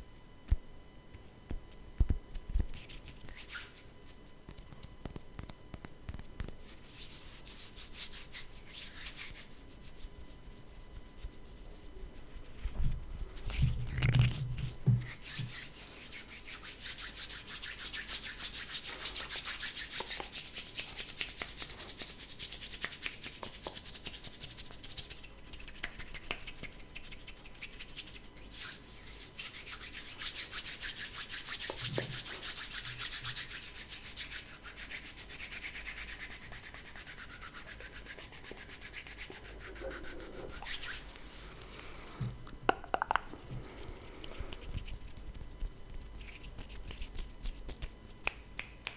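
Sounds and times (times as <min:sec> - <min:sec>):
hands rubbing together: 0:02.4 - 0:42.4, 0:43.0 - 0:48.9
soft knock: 0:14.8 - 0:15.5.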